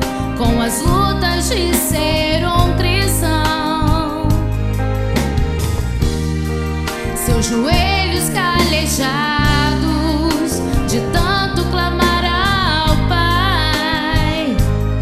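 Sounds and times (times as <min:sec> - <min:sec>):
person singing with vibrato: 0:00.0 - 0:04.5, 0:07.0 - 0:14.8
instrumental backing with bass: 0:00.0 - 0:15.0.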